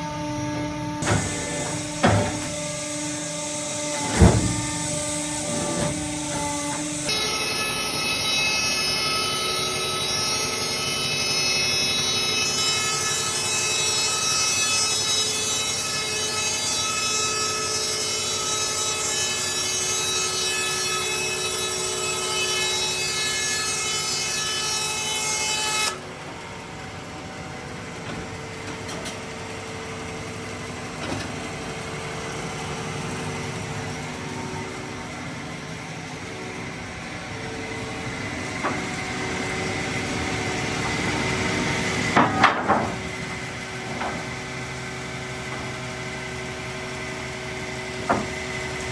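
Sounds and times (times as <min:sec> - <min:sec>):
bandsaw whining: 0:00.0 - 0:27.6
low machine hum: 0:26.0 - 0:48.9.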